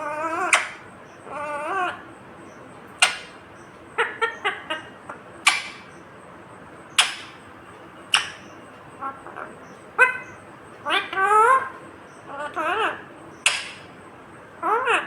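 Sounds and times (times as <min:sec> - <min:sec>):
parakeet chirps: 0:00.0 - 0:02.0, 0:03.0 - 0:06.0, 0:06.9 - 0:07.4, 0:08.0 - 0:14.0
parakeet warbling call: 0:00.0 - 0:02.1, 0:03.0 - 0:03.4, 0:04.0 - 0:06.0, 0:06.9 - 0:07.4, 0:08.1 - 0:14.0, 0:14.6 - 0:15.0
parakeet shrill squawks: 0:08.1 - 0:13.9.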